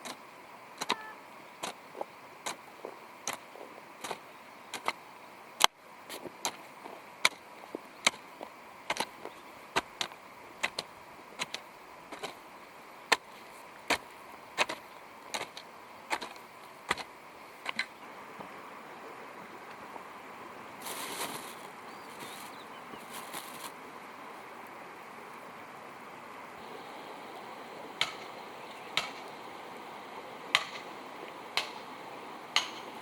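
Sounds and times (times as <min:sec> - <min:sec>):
hand hoe striking ground: 0:00.8 - 0:05.0, 0:05.6 - 0:12.4, 0:13.1 - 0:18.0, 0:20.8 - 0:23.8, 0:28.0 - 0:28.3, 0:29.0 - 0:29.3, 0:30.5 - 0:30.9, 0:31.6 - 0:31.8, 0:32.6 - 0:33.0.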